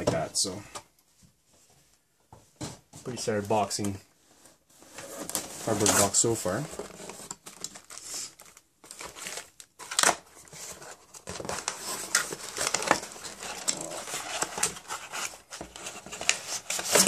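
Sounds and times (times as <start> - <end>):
paper and plastic crinkling: 4.8 - 17.0.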